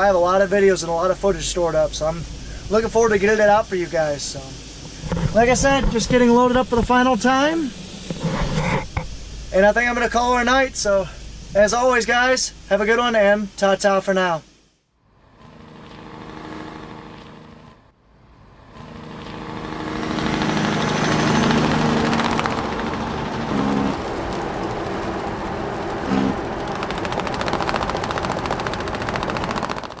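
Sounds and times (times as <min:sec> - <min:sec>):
large engine running: 0:15.3 - 0:30.0.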